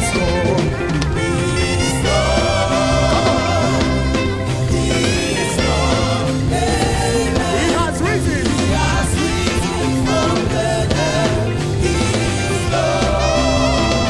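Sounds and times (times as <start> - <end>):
band playing bass and drums: 0.0 - 14.0
person singing: 0.0 - 14.0.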